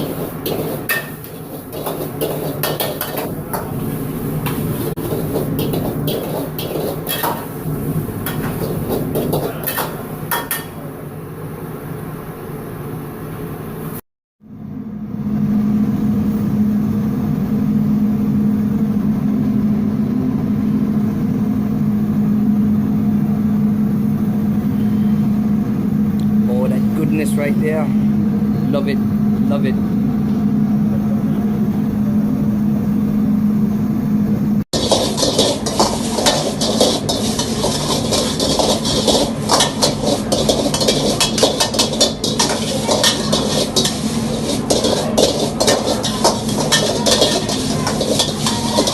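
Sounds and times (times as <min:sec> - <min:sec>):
metal ladle clanking on wok: 0:00.0 - 0:03.8, 0:04.5 - 0:07.6, 0:08.2 - 0:10.8, 0:34.8 - 0:48.9
food sizzling: 0:00.0 - 0:10.8, 0:34.7 - 0:48.9
kitchen equipment roaring: 0:00.0 - 0:48.9
steady low hum: 0:00.0 - 0:48.9.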